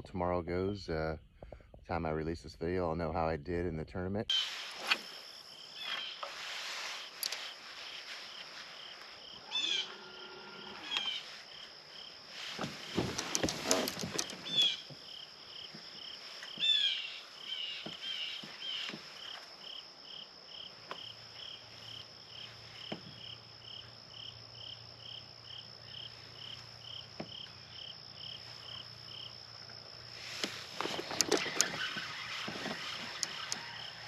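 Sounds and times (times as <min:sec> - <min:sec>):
insect chirping: 0:04.2 - 0:34.0
high-pitched insect buzz: 0:04.3 - 0:12.2
bird calling: 0:09.3 - 0:11.4, 0:12.6 - 0:15.0, 0:16.5 - 0:19.4, 0:30.2 - 0:34.0.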